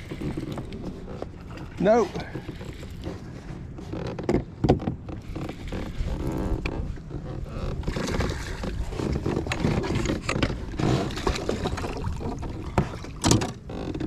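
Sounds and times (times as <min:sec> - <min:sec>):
wind rumbling on microphone: 0:00.0 - 0:14.0
water splashing: 0:07.8 - 0:13.7.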